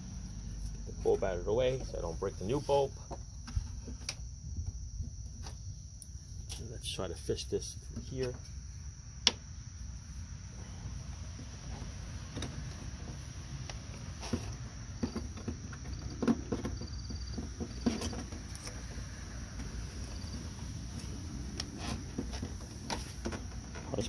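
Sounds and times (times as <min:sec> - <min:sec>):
steady low hum: 0:00.0 - 0:15.6.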